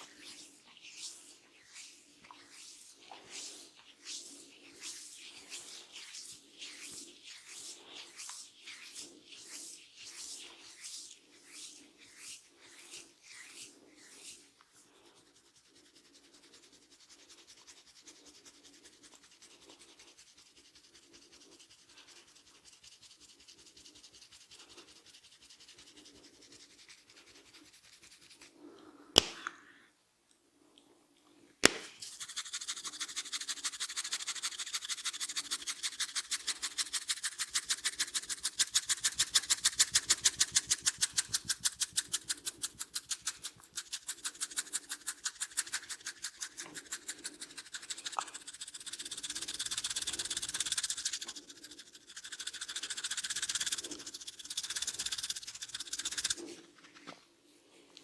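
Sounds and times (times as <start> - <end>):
hands rubbing hair and scalp: 0.0 - 29.4, 31.6 - 57.2
sharp cracks: 31.6 - 32.0.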